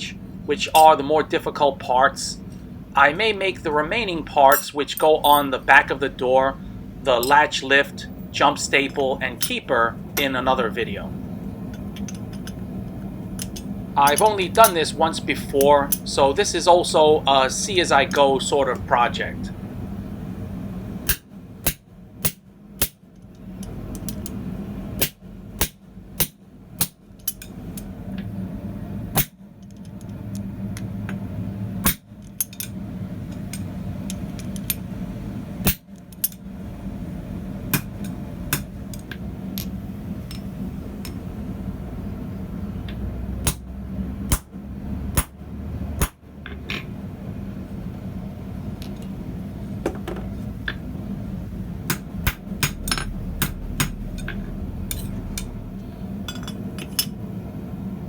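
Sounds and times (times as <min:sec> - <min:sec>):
steady low hum: 0:00.0 - 0:58.0
hammer striking steel on an anvil: 0:37.7 - 0:38.7, 0:51.9 - 0:55.6.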